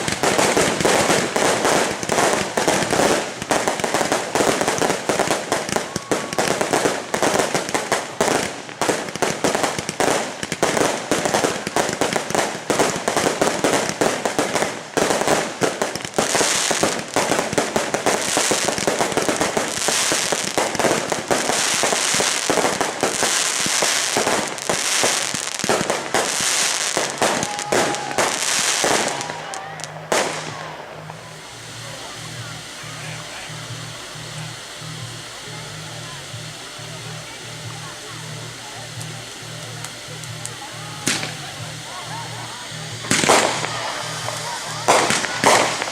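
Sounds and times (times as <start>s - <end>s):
fireworks bangs and crackles: 0.0s - 45.9s
hissing crackling firework bursts: 0.0s - 45.9s
music: 27.4s - 45.9s.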